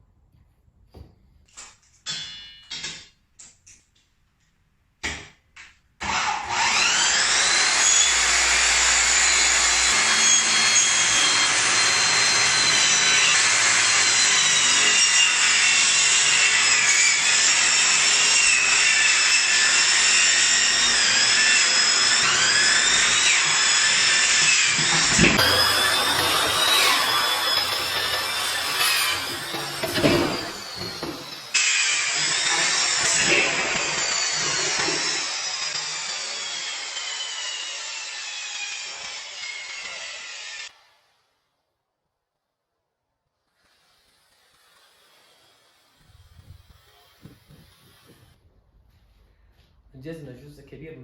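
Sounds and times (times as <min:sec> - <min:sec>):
circular saw cutting wood: 0:06.0 - 0:41.5, 0:43.4 - 0:48.4.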